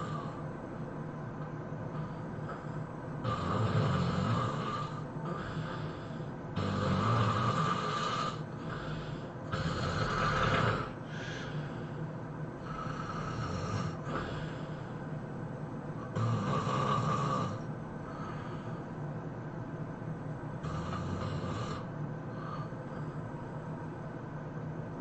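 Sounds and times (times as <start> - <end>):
person snoring loudly: 0.0 - 0.4, 3.2 - 11.6, 12.6 - 14.5, 16.0 - 18.5, 20.6 - 22.7
quiet breathing: 0.0 - 24.0.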